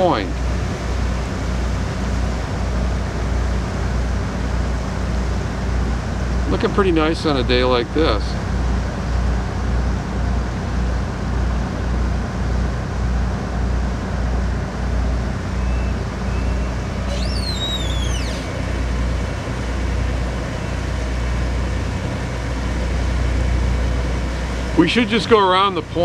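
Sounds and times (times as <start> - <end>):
water wash: 0.0 - 15.6, 16.7 - 26.0
boat engine droning: 0.0 - 26.0
short high falling cry: 15.7 - 18.6.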